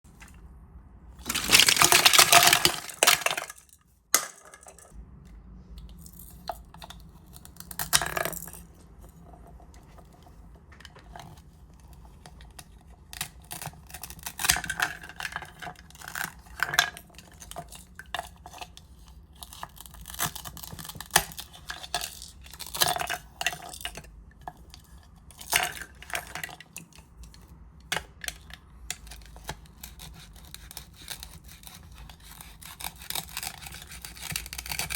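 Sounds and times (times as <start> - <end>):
small hard objects clinking: 1.2 - 4.9.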